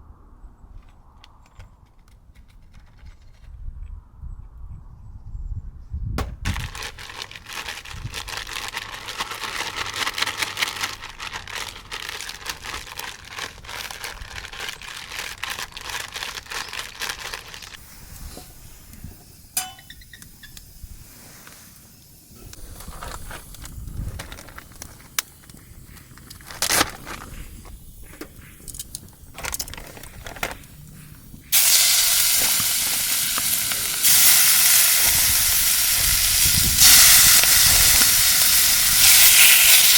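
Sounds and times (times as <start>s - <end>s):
fire crackling and popping: 17.5s - 39.9s
food sizzling over fire: 17.7s - 26.2s, 31.5s - 39.9s
loud steady hiss: 17.8s - 23.8s, 30.6s - 39.9s.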